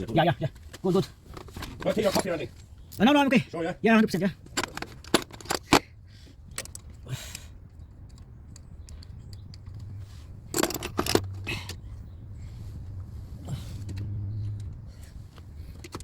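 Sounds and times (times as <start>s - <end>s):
metallic knocks and clicks: 10.5s - 11.5s.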